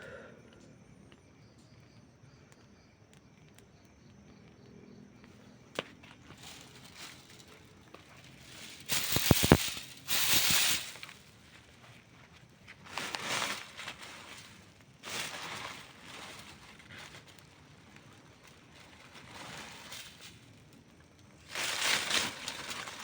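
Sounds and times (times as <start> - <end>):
campfire crackling: 1.9 - 13.2
fire popping: 2.4 - 4.7, 5.7 - 11.8
fire hissing: 6.5 - 11.4.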